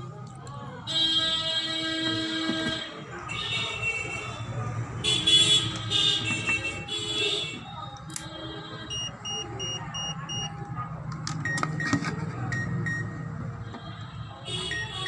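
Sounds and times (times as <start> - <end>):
short electronic beeps: 8.9 - 10.5.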